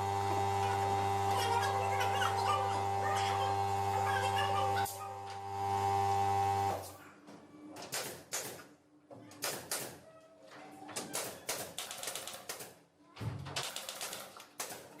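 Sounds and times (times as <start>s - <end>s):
workshop machine motor hum: 0.0s - 7.0s.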